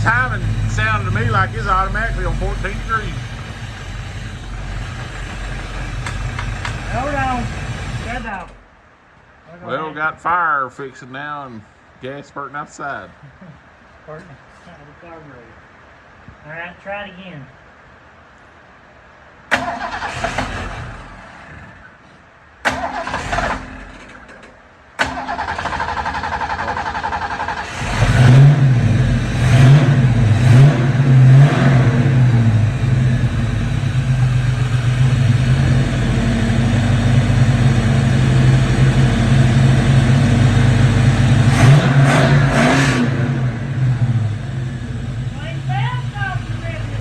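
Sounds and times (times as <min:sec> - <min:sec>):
car engine starting and revving: 0:00.0 - 0:08.7, 0:19.5 - 0:21.9, 0:22.6 - 0:47.0.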